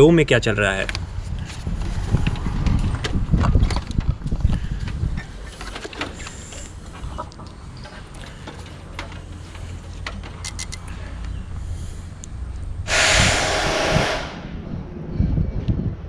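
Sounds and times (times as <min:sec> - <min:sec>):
clicks: 0:07.2 - 0:11.4
loud hiss burst: 0:12.9 - 0:14.5.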